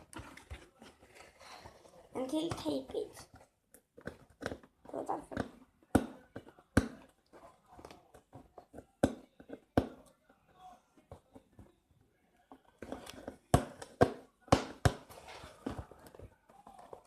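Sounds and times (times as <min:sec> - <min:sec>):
scraping and rustling: 0:00.0 - 0:03.4.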